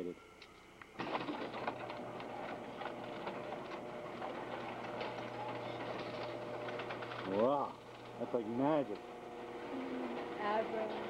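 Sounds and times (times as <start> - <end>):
door clattering along track: 1.0 - 8.2
garage door opener motor hum: 1.0 - 11.0.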